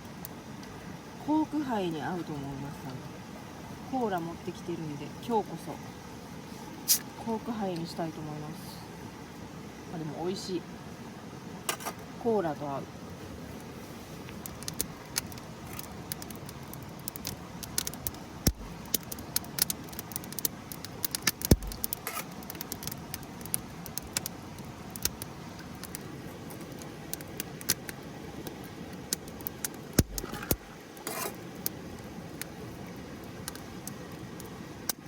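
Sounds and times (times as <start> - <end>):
fire popping and snapping: 0.0 - 0.8, 11.6 - 12.2, 13.2 - 35.0
campfire crackling: 0.0 - 35.0.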